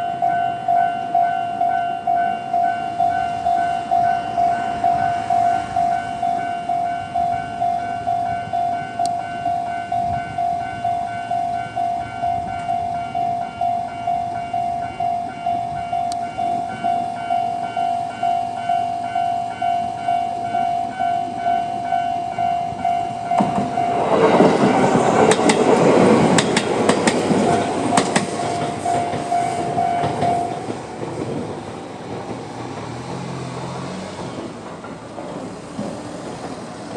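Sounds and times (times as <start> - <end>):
level-crossing alarm ringing: 0.0 - 30.8
electric train passing: 0.0 - 36.9
wheels clacking over rail joints: 22.2 - 36.9.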